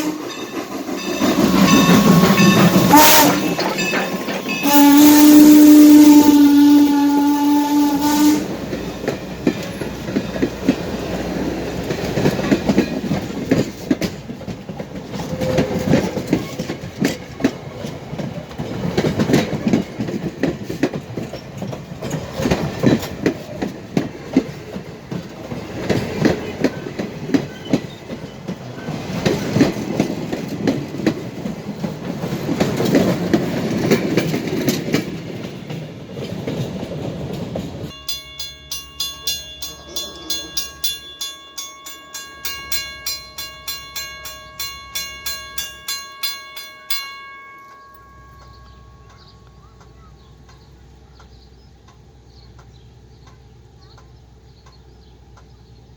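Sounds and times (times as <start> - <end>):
steam whistle blast: 0.0 - 0.3, 2.3 - 3.7, 4.6 - 8.5
train wheels clickety-clack: 0.0 - 55.9.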